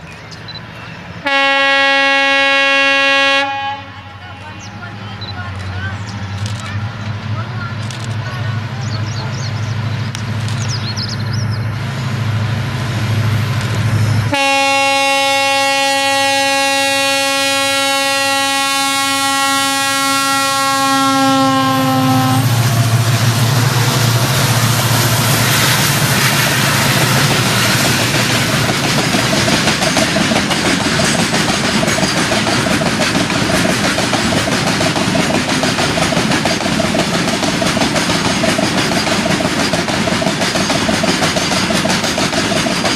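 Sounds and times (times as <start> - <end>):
diesel locomotive engines running: 0.0 - 42.9
train wheels rumbling on rail: 0.0 - 42.9
locomotive horn blast: 1.2 - 4.5, 14.3 - 24.7.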